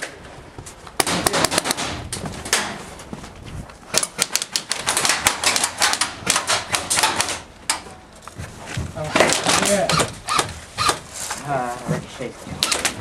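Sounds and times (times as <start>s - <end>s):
airsoft guns firing: 1.0s - 2.0s, 3.9s - 7.5s.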